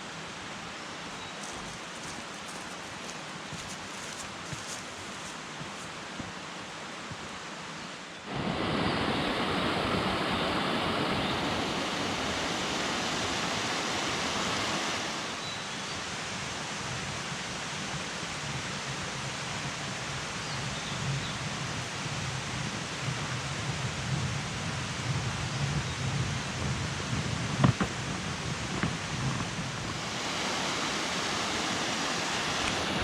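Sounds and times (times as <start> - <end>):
stream water rushing: 0.0 - 20.9, 26.4 - 33.0.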